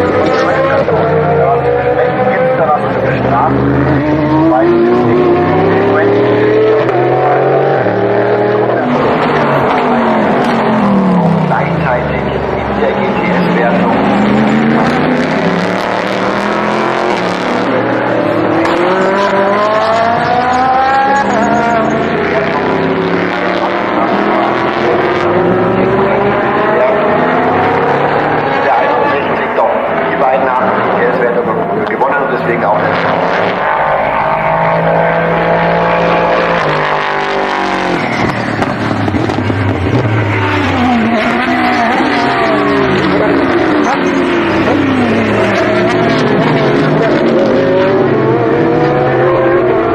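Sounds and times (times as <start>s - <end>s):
race car engine accelerating: 0.0s - 49.9s.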